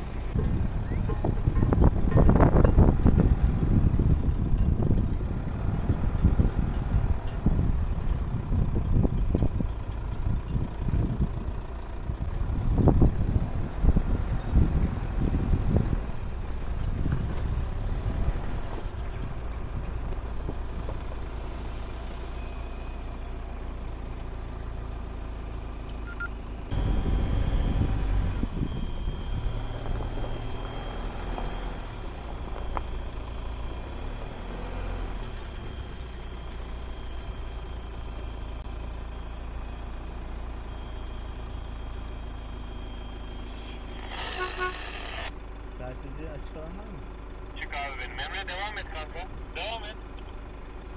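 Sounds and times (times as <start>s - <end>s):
pickup truck engine and tyres rumbling: 0.0s - 50.9s.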